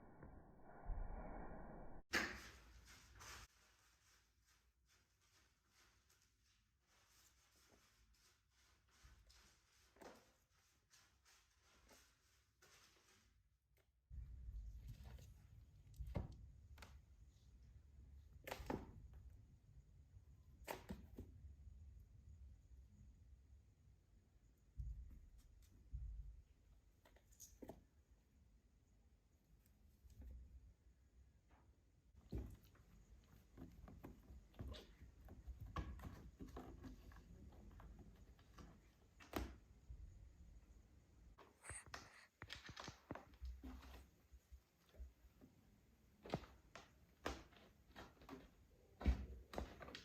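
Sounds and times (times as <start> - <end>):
kittens rustling and knocking: 32.2 - 39.8
kittens pattering and tapping: 32.2 - 39.9, 41.4 - 50.0.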